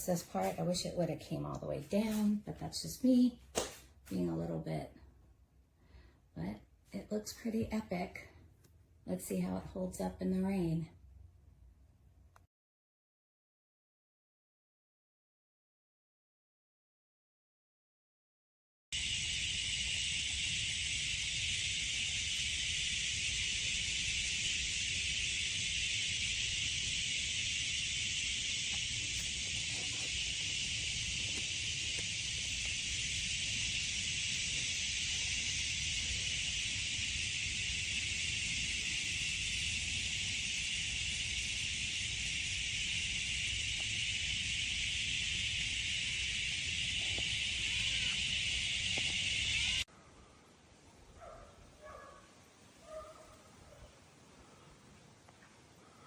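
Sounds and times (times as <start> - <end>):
rain hiss: 19.0 - 51.2.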